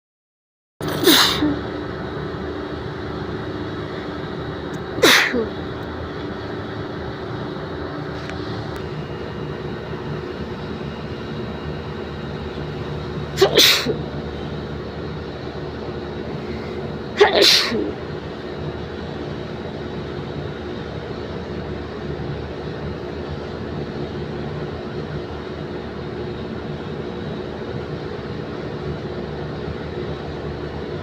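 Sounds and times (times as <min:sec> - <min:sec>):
person sneezing: 0:00.8 - 0:01.6, 0:05.0 - 0:05.6, 0:13.4 - 0:14.0, 0:16.5 - 0:18.0
steady background hum: 0:00.8 - 0:31.0.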